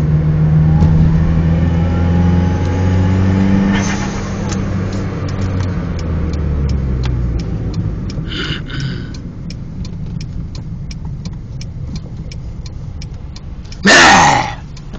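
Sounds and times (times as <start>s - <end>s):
car engine running: 0.0s - 14.9s
light regular ticking: 4.4s - 14.9s.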